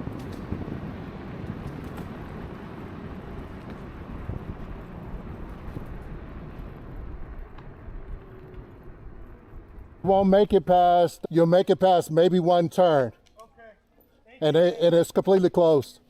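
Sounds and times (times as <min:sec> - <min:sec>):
wind buffeting microphone: 0:00.0 - 0:10.7
scooter tyre noise: 0:00.0 - 0:11.0.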